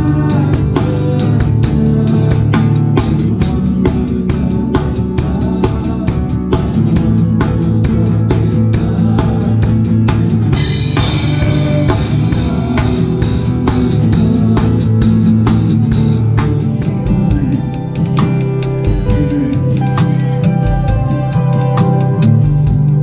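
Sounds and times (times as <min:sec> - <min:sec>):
drum kit beat: 0:00.0 - 0:23.0
worship band music: 0:00.0 - 0:23.0.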